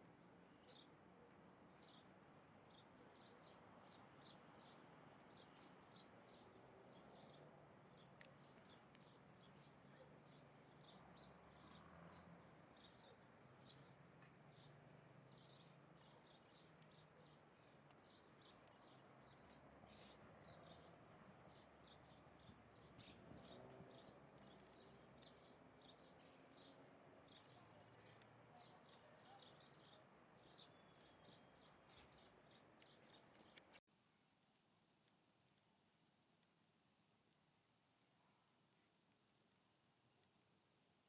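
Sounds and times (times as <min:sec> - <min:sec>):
faint background hiss: 0:24.3 - 0:41.0.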